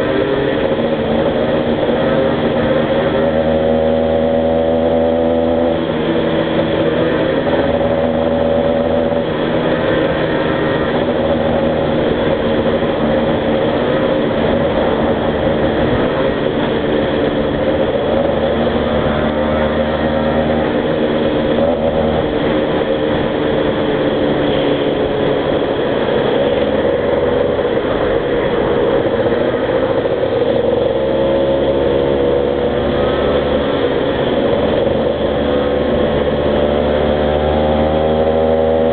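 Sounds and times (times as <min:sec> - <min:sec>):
two-stroke motorcycle engines: 0:00.0 - 0:38.9.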